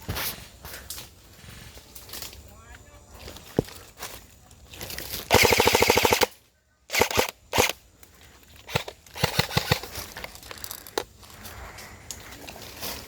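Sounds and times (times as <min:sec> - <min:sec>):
airsoft gun automatic burst: 0:05.3 - 0:07.8, 0:08.7 - 0:10.0.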